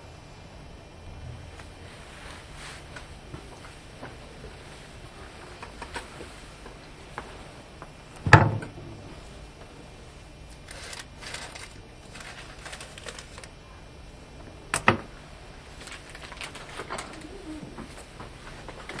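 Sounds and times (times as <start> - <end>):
rustling: 10.5 - 13.6, 15.6 - 19.0.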